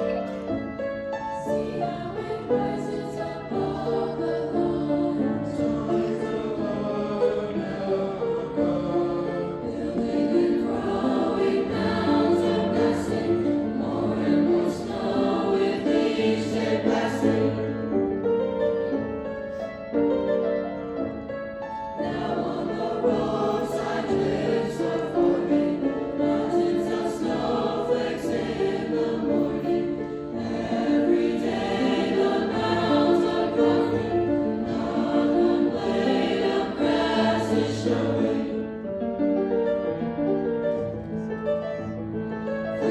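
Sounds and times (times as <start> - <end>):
choir singing in parts: 1.3 - 18.2, 21.9 - 39.0.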